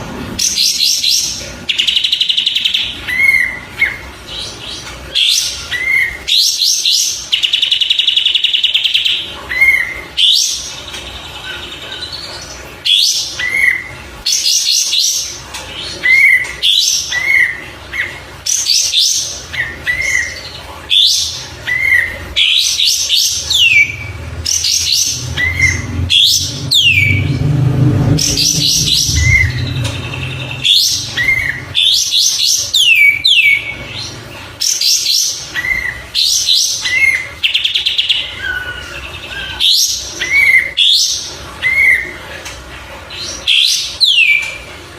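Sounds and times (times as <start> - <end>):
bird singing chattering notes: 0.4 - 42.2
low rumble: 25.0 - 31.7.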